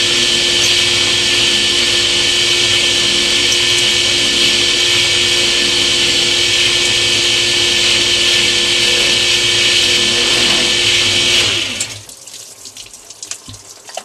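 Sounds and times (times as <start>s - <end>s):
drill press running: 0.0s - 12.0s
water trickling and dripping: 12.0s - 14.0s.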